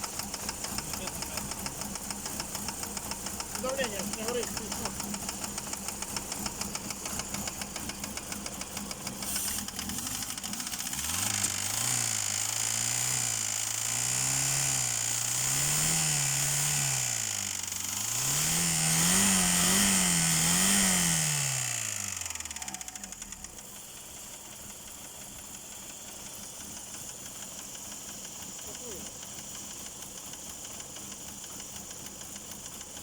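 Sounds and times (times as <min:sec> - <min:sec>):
car engine idling with knock: 0:00.0 - 0:18.6, 0:19.2 - 0:33.0
engine revving: 0:00.0 - 0:23.5.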